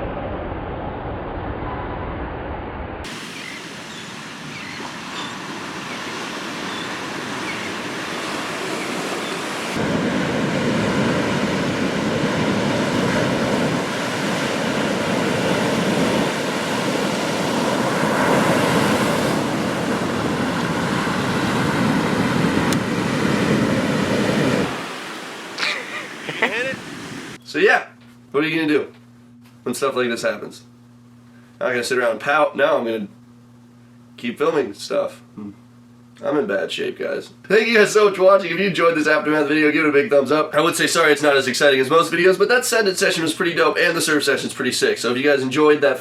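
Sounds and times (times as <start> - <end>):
wind rushing: 0.0 - 25.3
wind buffeting microphone: 3.0 - 25.0
ocean surf: 3.0 - 27.4.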